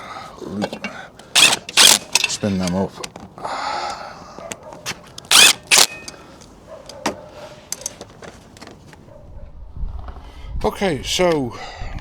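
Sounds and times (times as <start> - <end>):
metal tools clinking: 0.5 - 3.3, 5.2 - 8.2
impact gun spinning bolts: 1.4 - 2.8, 5.2 - 6.2.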